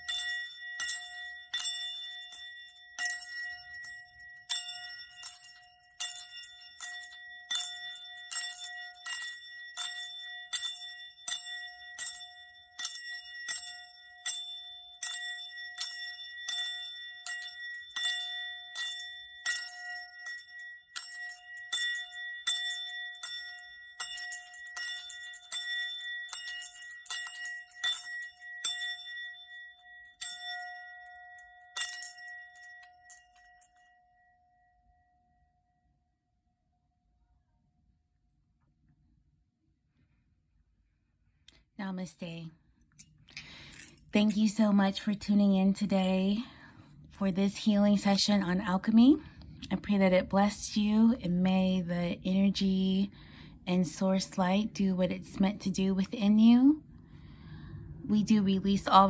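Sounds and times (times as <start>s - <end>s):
bell struck and ringing: 0.0s - 34.7s.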